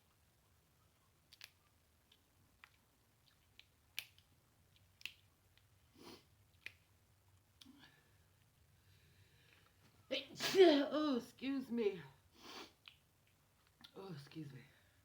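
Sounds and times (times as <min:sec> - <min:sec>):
wet lip smacks: 0:01.3 - 0:06.9, 0:12.6 - 0:14.0.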